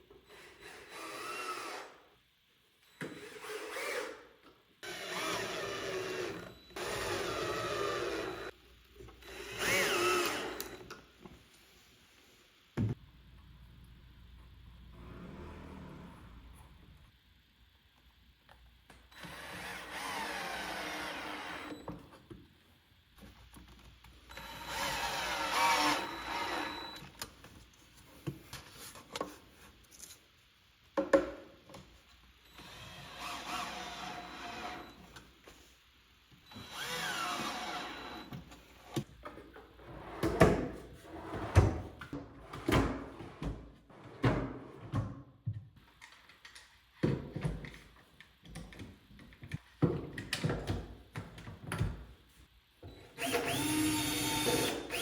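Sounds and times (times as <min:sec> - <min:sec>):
power drill driving screws: 0:00.3 - 0:02.0, 0:03.0 - 0:04.2, 0:04.8 - 0:08.5, 0:09.2 - 0:10.8, 0:19.2 - 0:21.8, 0:24.4 - 0:27.0, 0:32.5 - 0:35.0, 0:36.5 - 0:38.4, 0:53.2 - 0:55.0.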